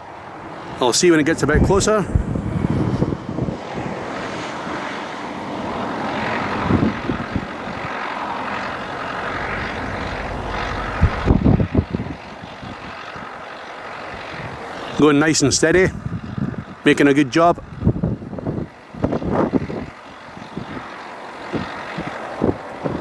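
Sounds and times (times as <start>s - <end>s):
wind buffeting microphone: 1.0s - 23.0s
tractor diesel engine running: 8.4s - 11.4s.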